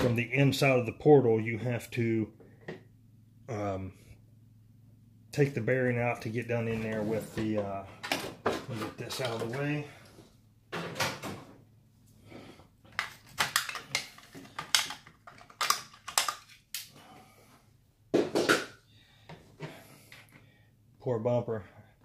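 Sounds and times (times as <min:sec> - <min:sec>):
plastic and metal parts clattering: 0:06.7 - 0:09.9, 0:12.9 - 0:16.6.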